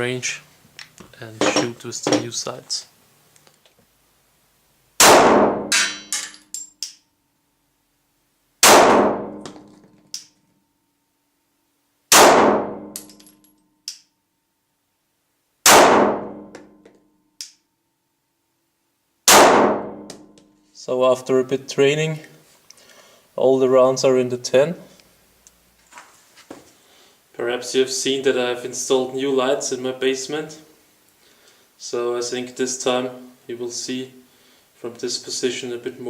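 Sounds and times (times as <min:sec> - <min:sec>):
pistol shots ringing: 0:05.0 - 0:06.2, 0:08.6 - 0:09.4, 0:12.1 - 0:13.1, 0:15.7 - 0:16.4, 0:19.3 - 0:20.1
small metallic clinks: 0:05.9 - 0:07.1, 0:13.0 - 0:13.9.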